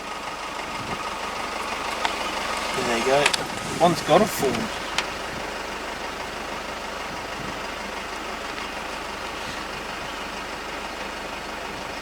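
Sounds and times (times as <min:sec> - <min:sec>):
vehicle engine idling: 0:00.0 - 0:12.0.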